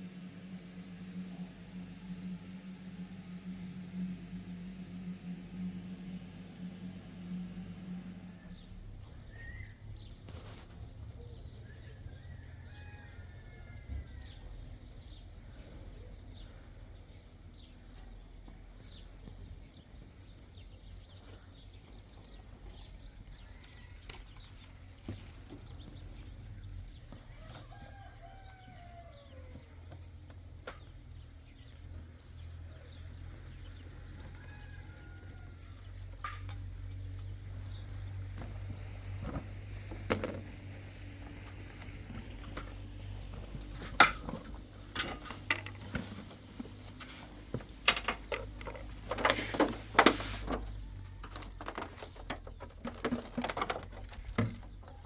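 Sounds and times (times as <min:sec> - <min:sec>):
steady low rumble: 0:00.0 - 0:12.6
rooster crowing: 0:11.8 - 0:14.6, 0:27.2 - 0:29.9, 0:33.7 - 0:36.0.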